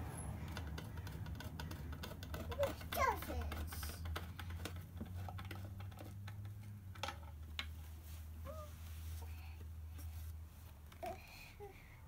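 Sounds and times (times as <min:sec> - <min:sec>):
screwdriver and wooden parts clicking: 0:00.4 - 0:07.7.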